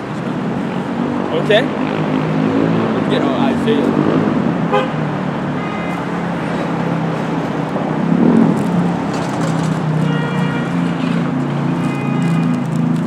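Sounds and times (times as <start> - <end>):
road vehicle hum: 0.0 - 13.0.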